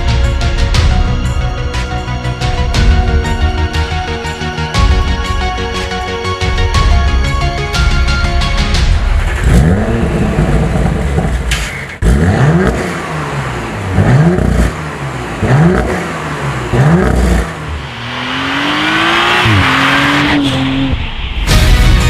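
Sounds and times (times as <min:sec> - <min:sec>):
car engine revving: 0:09.0 - 0:21.6.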